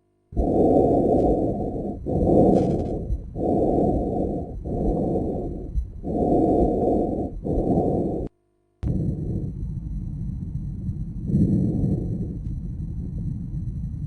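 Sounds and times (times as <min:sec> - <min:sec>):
breathing through stethoscope: 0:00.4 - 0:08.3.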